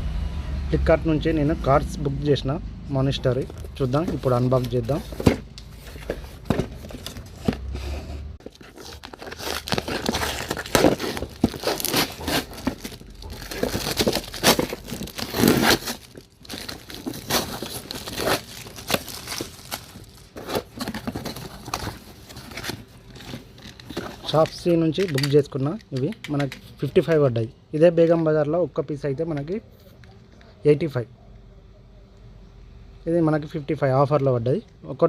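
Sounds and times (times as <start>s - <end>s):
packaging crinkling and tearing: 3.3s - 7.7s, 8.4s - 26.4s.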